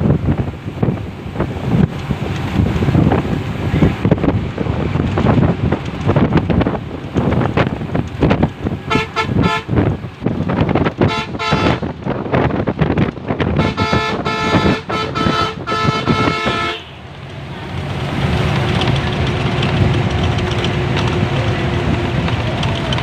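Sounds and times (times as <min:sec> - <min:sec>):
rumbling clattering background: 0:00.0 - 0:23.0
horn blasts: 0:08.8 - 0:10.0, 0:11.0 - 0:12.0, 0:13.4 - 0:17.1.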